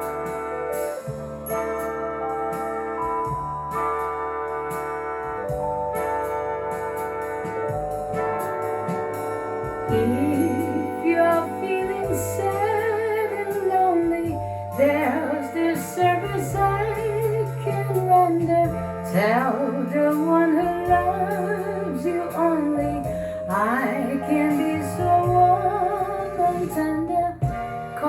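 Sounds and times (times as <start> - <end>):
held bass notes: 0.0 - 28.0
woman singing with vibrato: 9.9 - 28.0.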